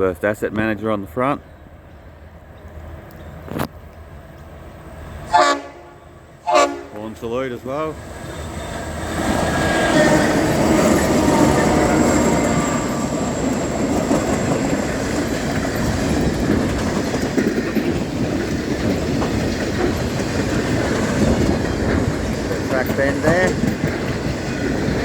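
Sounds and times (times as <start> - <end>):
freight train wheels on rail: 1.0 - 25.0
wheels clacking over track joints: 9.0 - 25.0.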